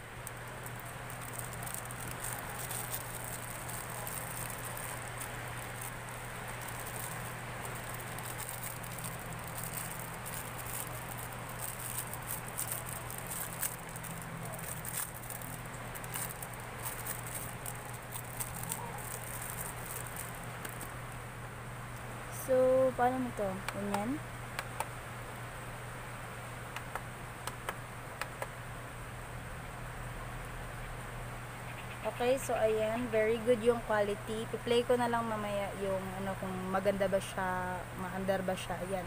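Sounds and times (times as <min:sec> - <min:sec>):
rain pattering: 0:00.0 - 0:21.2
low steady hum: 0:00.0 - 0:39.0.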